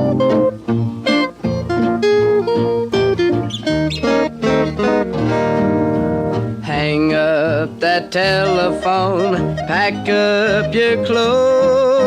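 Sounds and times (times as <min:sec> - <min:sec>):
country band music on old record: 0:00.0 - 0:12.0
guitar: 0:00.0 - 0:12.0
wavering held notes: 0:00.0 - 0:12.0.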